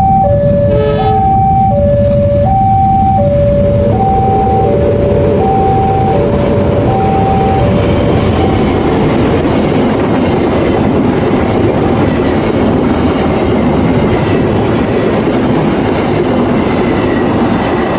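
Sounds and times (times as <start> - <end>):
two-tone warning tone: 0.0 - 9.4
train rumbling on rails: 0.0 - 17.9.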